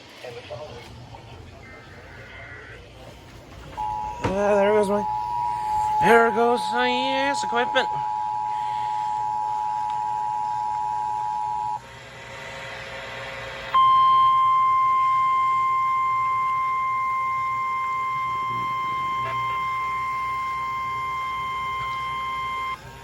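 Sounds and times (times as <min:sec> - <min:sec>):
single-tone warning alarm: 0:01.6 - 0:23.0
two-tone attention signal: 0:03.8 - 0:11.8, 0:13.7 - 0:22.8.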